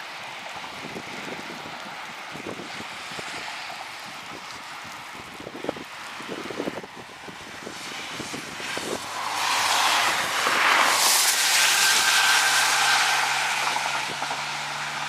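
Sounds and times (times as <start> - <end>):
motor vehicle passing: 6.1 - 15.0.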